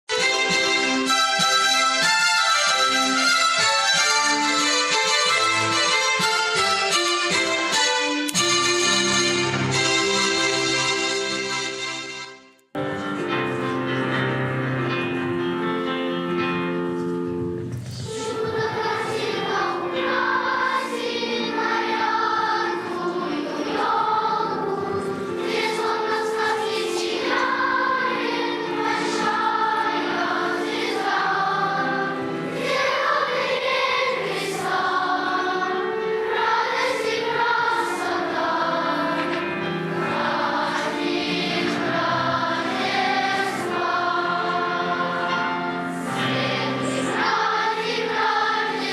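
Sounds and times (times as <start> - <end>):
instrumental accompaniment: 0.1 - 48.9
choir singing: 18.1 - 48.9.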